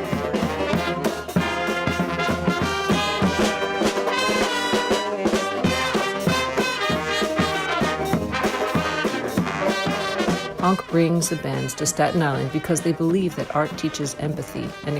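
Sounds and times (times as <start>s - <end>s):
steady drum beat: 0.0s - 14.9s
trombones and trumpets playing: 0.0s - 14.9s.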